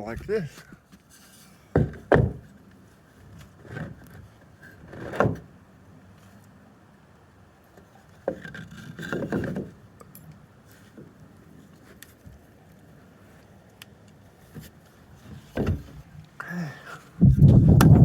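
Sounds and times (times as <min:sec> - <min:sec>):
wood scraping and bumping: 0:00.2 - 0:02.5, 0:03.3 - 0:05.5, 0:08.2 - 0:09.8, 0:14.5 - 0:16.1
wooden boards knocking: 0:01.8 - 0:02.4.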